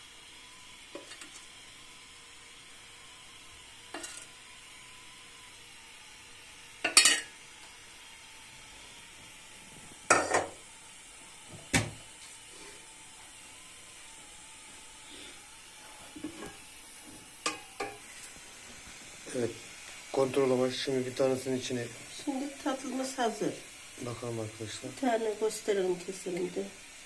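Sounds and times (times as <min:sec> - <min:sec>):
faint steady hiss: 0:00.0 - 0:27.0
kitchenware clattering: 0:06.8 - 0:07.4.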